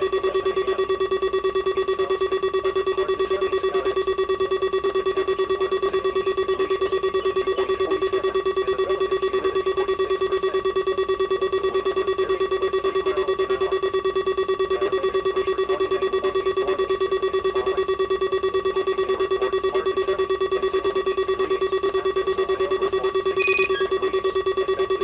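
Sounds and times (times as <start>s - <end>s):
pulsing buzzy alarm tone: 23.4s - 24.1s.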